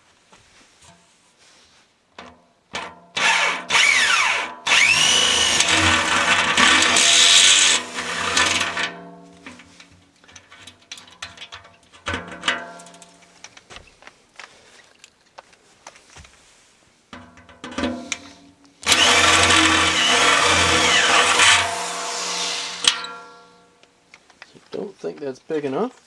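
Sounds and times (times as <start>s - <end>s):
power drill cutting metal: 3.2s - 9.0s, 18.8s - 23.6s
metal ringing: 18.9s - 23.8s.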